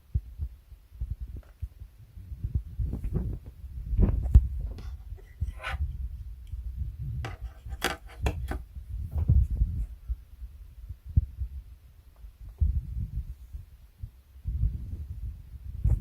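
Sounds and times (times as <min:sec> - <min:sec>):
low thumping: 0:02.2 - 0:05.0, 0:08.5 - 0:11.7
hard drive clicking and knocking: 0:07.2 - 0:08.6.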